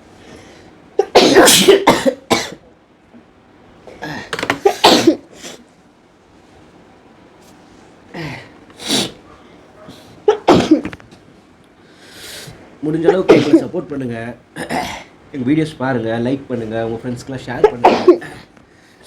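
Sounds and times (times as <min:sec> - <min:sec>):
person coughing: 0:01.0 - 0:02.6, 0:04.0 - 0:05.4, 0:10.2 - 0:11.0, 0:13.1 - 0:13.7, 0:14.6 - 0:15.1, 0:17.6 - 0:18.5
person sneezing: 0:01.0 - 0:02.6, 0:04.0 - 0:05.6, 0:08.2 - 0:09.3, 0:10.3 - 0:11.0.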